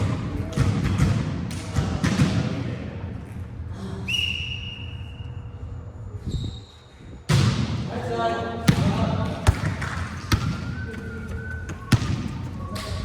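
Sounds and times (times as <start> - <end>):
whistle blast: 4.1 - 6.8.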